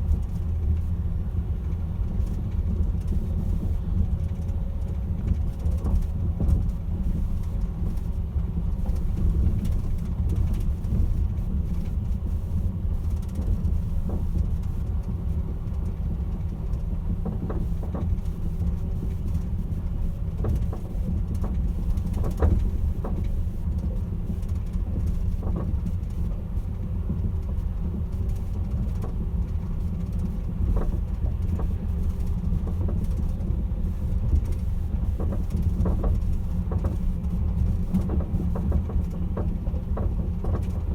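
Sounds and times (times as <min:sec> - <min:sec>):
train low rumble: 0:00.0 - 0:40.9.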